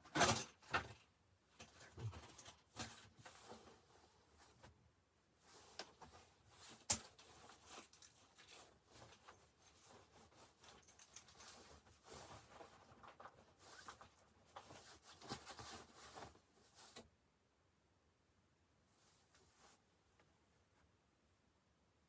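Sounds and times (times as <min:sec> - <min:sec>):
tent fabric rustling and crinkling: 0:05.4 - 0:17.0.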